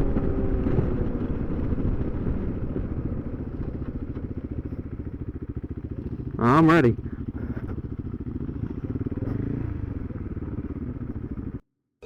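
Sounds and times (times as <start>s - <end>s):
motorcycle engine idling: 0.0s - 11.6s.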